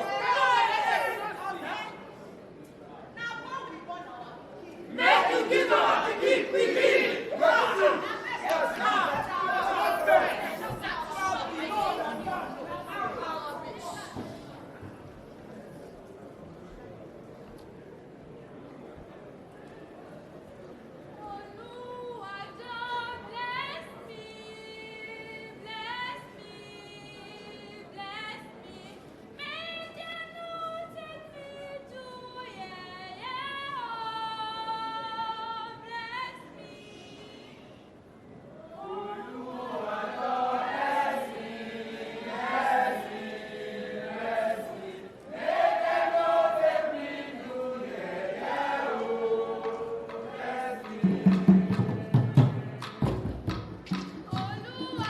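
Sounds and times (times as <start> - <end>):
voices singing a chant: 4.9 - 13.4, 38.7 - 53.3
drums beating: 50.0 - 55.0.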